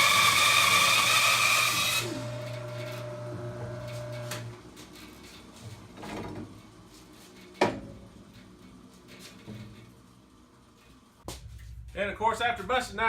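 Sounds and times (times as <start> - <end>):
bandsaw humming: 0.0 - 4.5.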